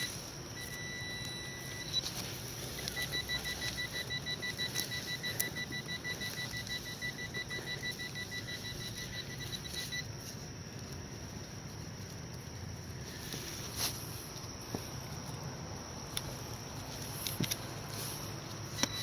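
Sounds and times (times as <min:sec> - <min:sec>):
metal detector beeping: 0:00.0 - 0:10.4, 0:16.1 - 0:19.0.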